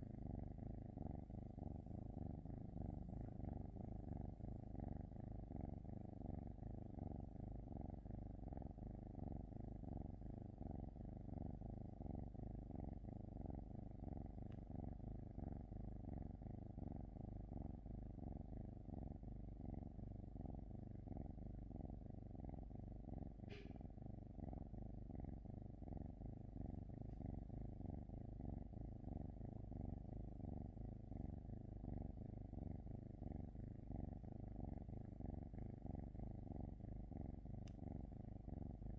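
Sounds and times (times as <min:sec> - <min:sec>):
cat purring: 0:00.0 - 0:38.9
brief click: 0:23.5 - 0:23.8.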